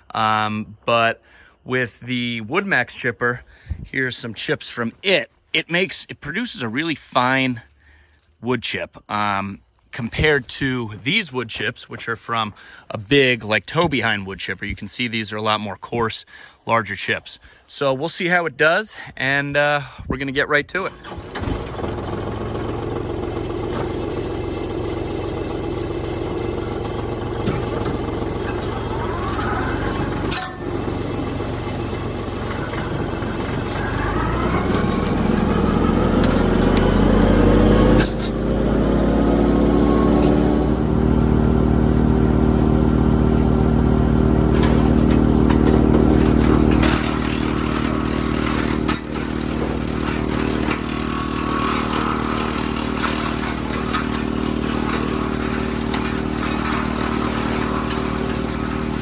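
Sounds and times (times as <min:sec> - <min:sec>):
diesel engine driving wood chipper: 0:10.1 - 0:16.5, 0:20.8 - 0:59.0
clattering: 0:23.4 - 0:40.4, 0:44.4 - 0:59.0.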